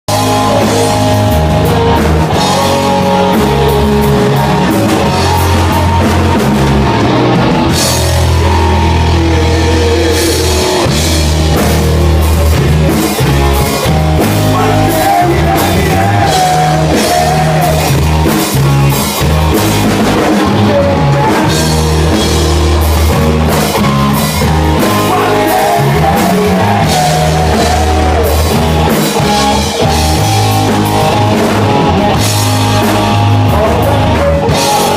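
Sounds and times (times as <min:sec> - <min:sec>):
heavy rock band playing: 0:00.1 - 0:34.9
person singing: 0:08.4 - 0:11.0, 0:14.3 - 0:18.1, 0:20.4 - 0:22.6, 0:24.7 - 0:29.8, 0:33.2 - 0:34.9.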